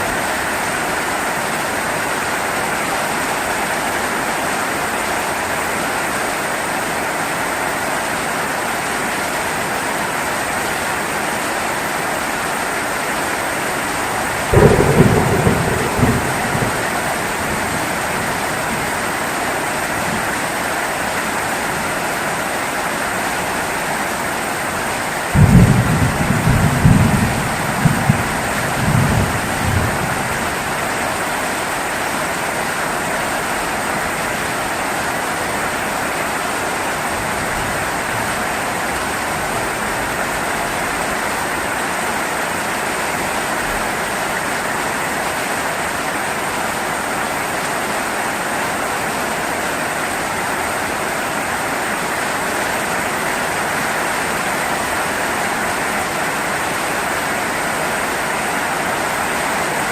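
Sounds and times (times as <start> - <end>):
heavy rain: 0.0 - 59.9
low thunder rumble: 14.4 - 19.0, 25.4 - 30.8.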